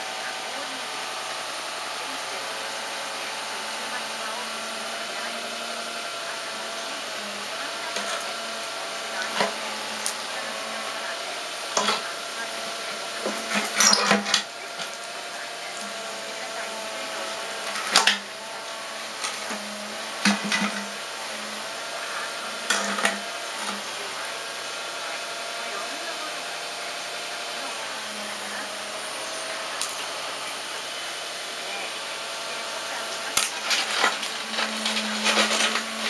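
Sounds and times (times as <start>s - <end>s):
diesel engine running: 0.0s - 36.0s.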